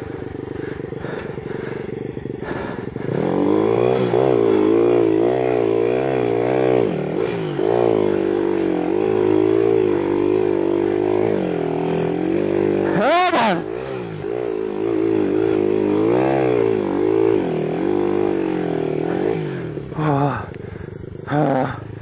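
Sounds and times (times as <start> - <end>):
small motorbike engine revving: 0.0 - 22.0.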